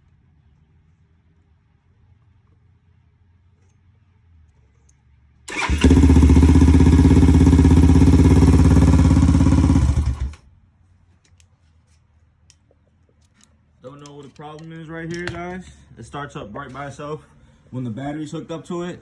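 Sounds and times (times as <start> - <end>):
quad engine starting and running: 5.5 - 10.5.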